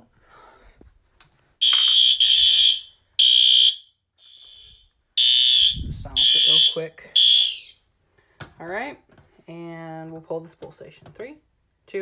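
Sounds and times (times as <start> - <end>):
fire alarm horn blasts: 1.6 - 7.8.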